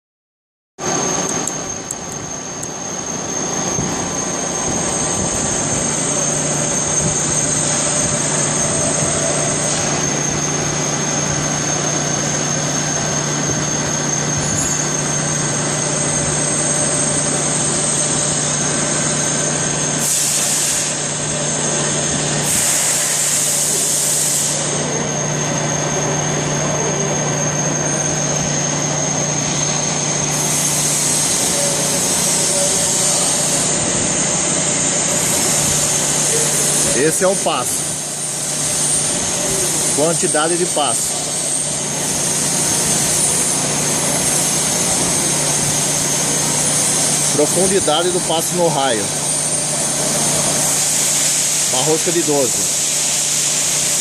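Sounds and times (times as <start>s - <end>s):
high whine: 0.8s - 54.0s
machine-shop machinery running: 0.8s - 54.0s
bursts of hissing: 34.9s - 54.0s.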